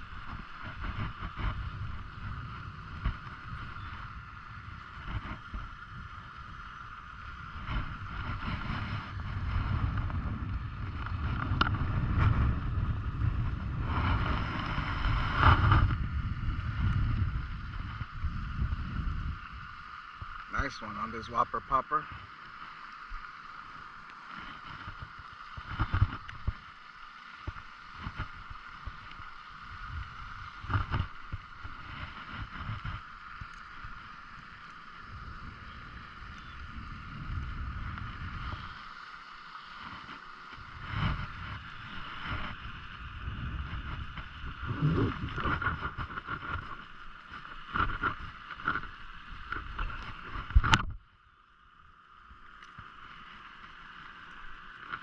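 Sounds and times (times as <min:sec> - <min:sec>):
steady high whine: 0:00.0 - 0:52.5.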